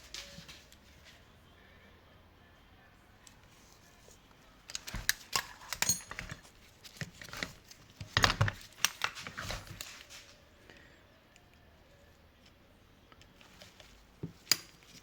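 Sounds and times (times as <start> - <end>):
metal parts clinking and clattering: 4.7 - 10.0, 14.4 - 15.0.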